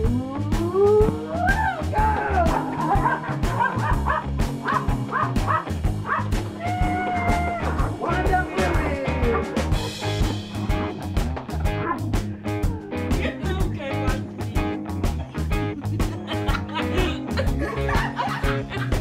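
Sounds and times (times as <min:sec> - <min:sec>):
upbeat background music: 0:00.0 - 0:19.0
dog whining and yipping: 0:04.7 - 0:08.0, 0:11.8 - 0:13.1.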